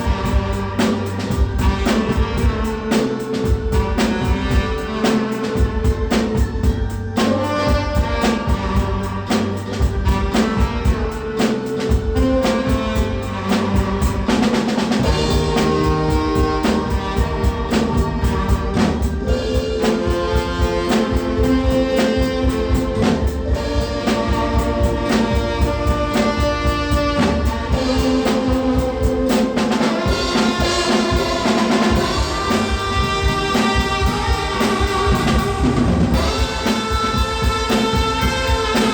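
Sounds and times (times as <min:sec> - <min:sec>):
drum kit beat: 0:00.0 - 0:38.9
tenor saxophone melody: 0:00.0 - 0:38.9.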